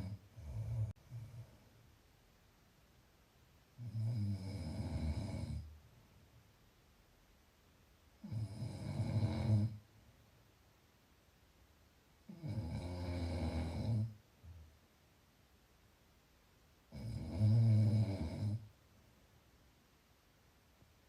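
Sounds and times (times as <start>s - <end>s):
low fluttering snores: 0.0s - 1.5s, 8.2s - 9.8s, 12.3s - 14.2s, 16.9s - 18.7s.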